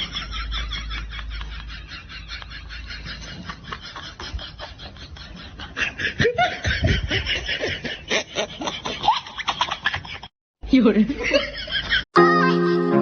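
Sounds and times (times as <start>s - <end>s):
breathy snickering laughter: 0.0s - 10.3s.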